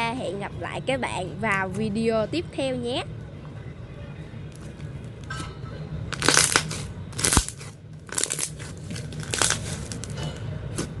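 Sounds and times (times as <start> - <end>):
slime squishing: 6.1 - 11.0.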